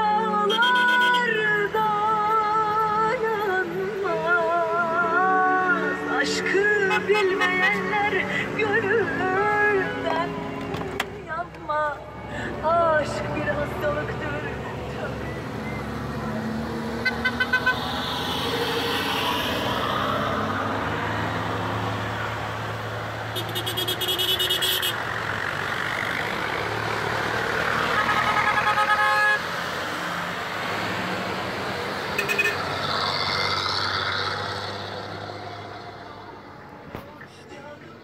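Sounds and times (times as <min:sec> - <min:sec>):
vehicle engines running: 0:00.0 - 0:38.0
rapid pulsing horn honking: 0:06.6 - 0:08.2, 0:16.9 - 0:19.0, 0:23.3 - 0:25.3, 0:27.7 - 0:29.6, 0:32.2 - 0:32.7.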